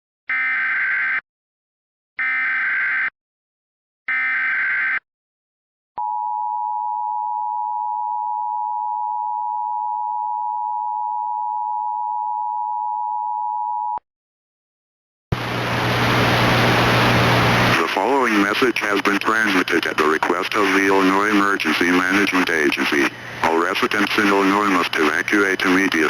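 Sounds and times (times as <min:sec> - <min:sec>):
hiss with low hum: 0:15.4 - 0:20.0.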